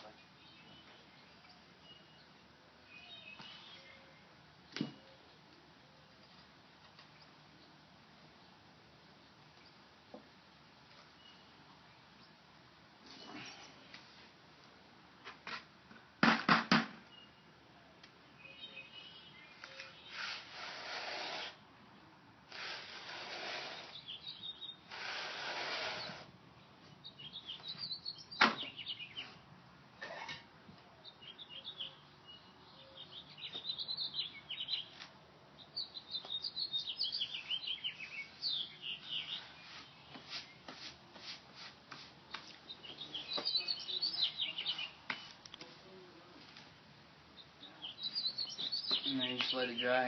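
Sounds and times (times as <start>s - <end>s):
small birds chirping: 0.0s - 14.9s, 17.1s - 21.6s, 22.6s - 29.4s, 30.0s - 41.3s, 41.9s - 50.0s
sharp knock: 16.2s - 17.0s
rasping scrapes: 20.1s - 21.6s, 22.5s - 24.0s.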